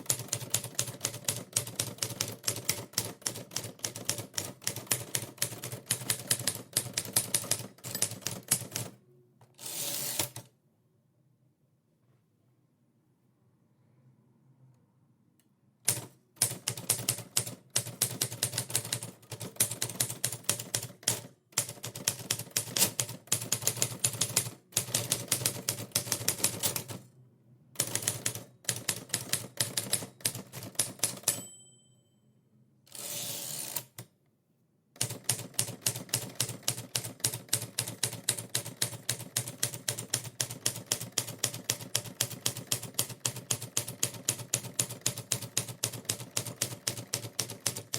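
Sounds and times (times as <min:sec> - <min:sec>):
typewriter carriage return: 0:00.0 - 0:08.9, 0:09.6 - 0:10.5, 0:15.9 - 0:27.0, 0:27.8 - 0:31.5, 0:32.9 - 0:34.1
typewriter keys clacking: 0:00.0 - 0:08.9, 0:15.9 - 0:27.0, 0:27.8 - 0:31.5, 0:35.0 - 0:47.9
typewriter margin bell ding: 0:31.0 - 0:32.2.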